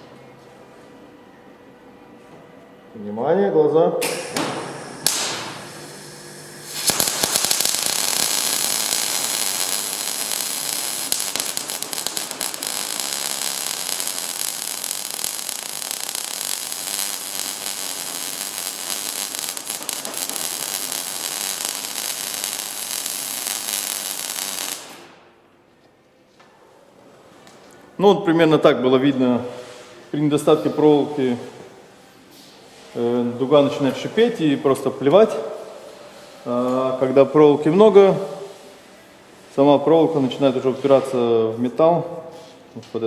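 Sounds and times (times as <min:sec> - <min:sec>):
welding arc crackling: 0:04.7 - 0:25.2.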